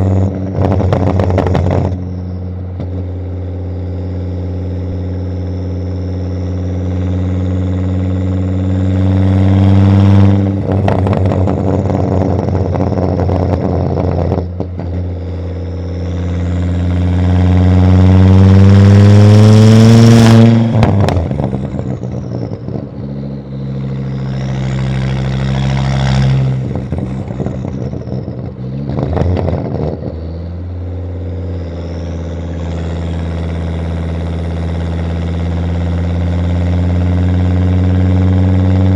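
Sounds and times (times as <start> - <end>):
car engine revving: 0.0 - 38.9
exhaust crackling pops: 0.3 - 2.1, 10.6 - 15.1, 25.5 - 30.2
high turbo whistle: 1.9 - 9.9.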